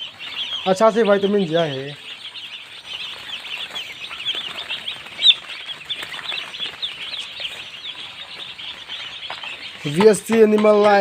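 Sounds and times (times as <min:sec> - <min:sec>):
chickens peeping: 0:00.0 - 0:11.0.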